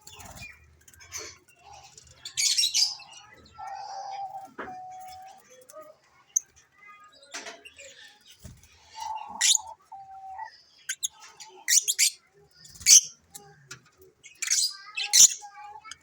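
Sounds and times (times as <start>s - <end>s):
lovebirds chirping: 7.8s - 16.0s.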